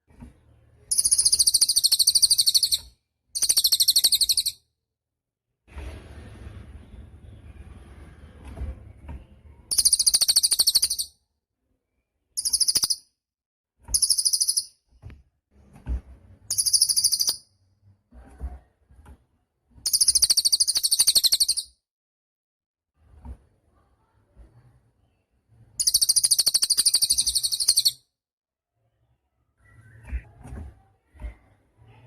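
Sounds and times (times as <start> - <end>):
songbird trilling: 0.9 - 2.8, 3.4 - 4.6, 9.7 - 11.1, 12.4 - 13.0, 14.0 - 14.7, 16.5 - 17.4, 19.9 - 21.7, 25.8 - 28.0.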